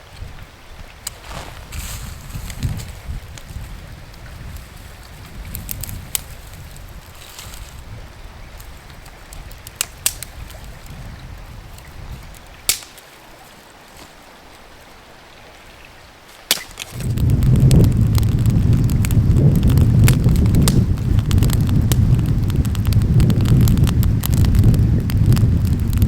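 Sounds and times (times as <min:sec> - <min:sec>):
wind buffeting microphone: 0:00.0 - 0:12.8, 0:16.8 - 0:26.0
wind rumble: 0:00.0 - 0:12.8, 0:16.8 - 0:26.0
sharp snaps: 0:08.6 - 0:10.8, 0:12.4 - 0:13.2, 0:16.4 - 0:24.6.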